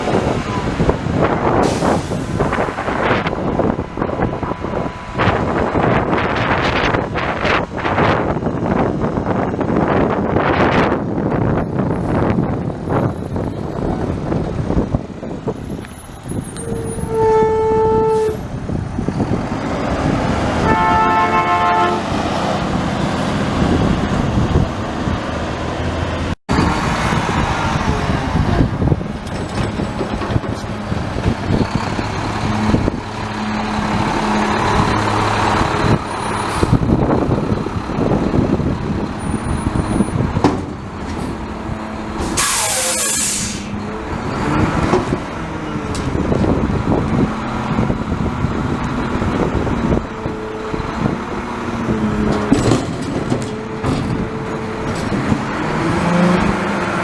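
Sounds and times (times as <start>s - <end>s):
garbage truck running: 0.0s - 57.0s
air hiss burst: 1.6s - 2.8s, 42.2s - 43.8s
truck horn toots: 16.4s - 18.6s, 20.6s - 22.2s.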